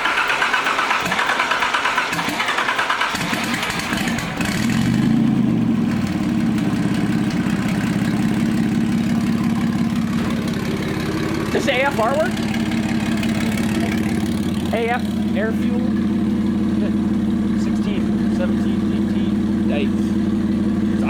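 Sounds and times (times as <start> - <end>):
starter motor cranking: 0.0 - 5.1
car engine idling: 0.0 - 21.0.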